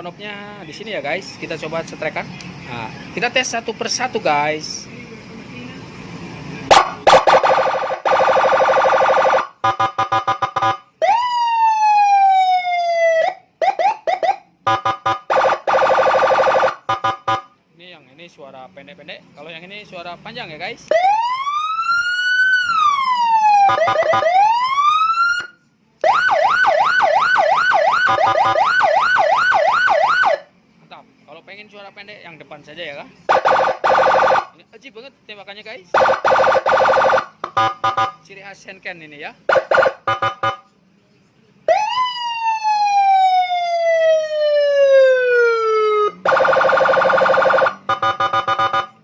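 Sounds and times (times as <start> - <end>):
electronic siren wailing: 6.7 - 17.5, 20.9 - 30.4, 33.3 - 34.5, 36.0 - 38.2, 39.5 - 40.7, 41.7 - 49.0
fast siren yelp: 6.7 - 17.5, 20.9 - 30.4, 33.3 - 34.6, 36.0 - 38.2, 39.5 - 40.6, 41.7 - 49.0
siren rapid blips: 6.7 - 17.5, 20.9 - 30.4, 33.3 - 34.5, 36.0 - 38.2, 39.5 - 40.7, 41.7 - 49.0.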